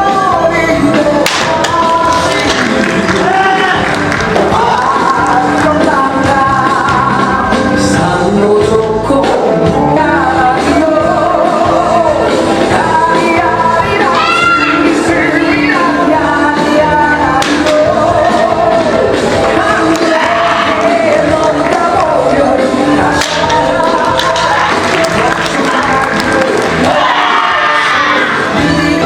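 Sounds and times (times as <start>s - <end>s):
person singing: 0.0s - 29.0s.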